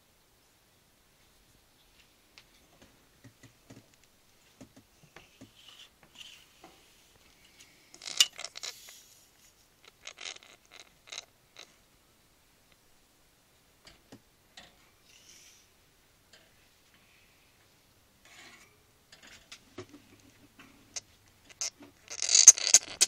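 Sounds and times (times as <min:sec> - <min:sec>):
faint scratching: 0:04.4 - 0:11.8, 0:18.2 - 0:23.0.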